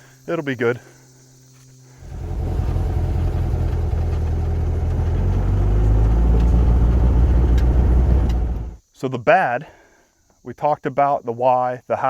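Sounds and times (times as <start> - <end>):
engine running: 2.0 - 8.8.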